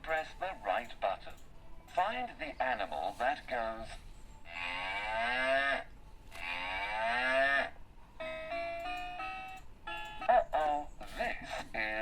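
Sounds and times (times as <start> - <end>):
cow mooing: 4.5 - 7.8.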